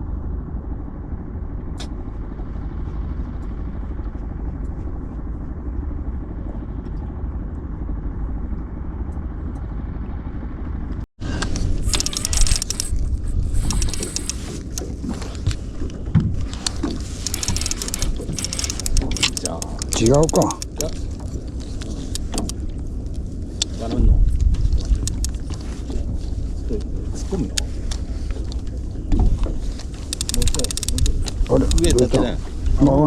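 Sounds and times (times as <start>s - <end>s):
boat engine rumbling: 0.0s - 33.0s
clicking and rattling handling noises: 11.4s - 32.2s.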